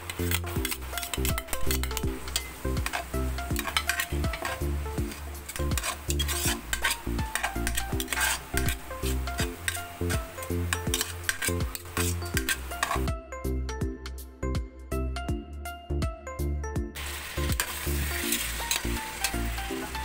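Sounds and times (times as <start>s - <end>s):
food sizzling in a pan: 0.0s - 13.1s, 17.0s - 20.0s
utensil stirring and scraping: 0.0s - 13.1s, 17.4s - 20.0s
background music with bass line: 0.0s - 20.0s.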